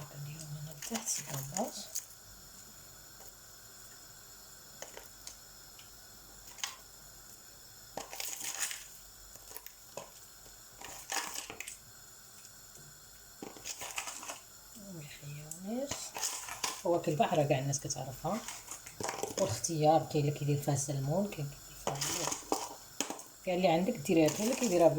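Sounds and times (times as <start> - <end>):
faint steady hum: 0.0 - 24.9
utensils clinking and scraping: 21.8 - 23.2, 24.1 - 24.9.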